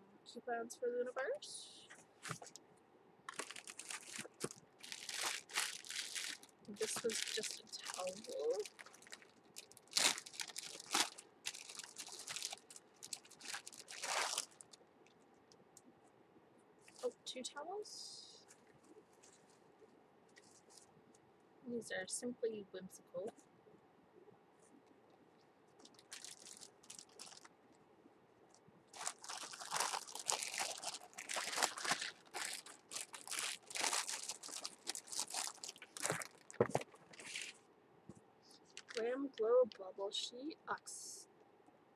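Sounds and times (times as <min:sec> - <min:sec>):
packaging crinkling and rustling: 0:02.2 - 0:02.6, 0:03.3 - 0:14.8, 0:25.8 - 0:27.5, 0:28.9 - 0:37.6, 0:38.6 - 0:39.1.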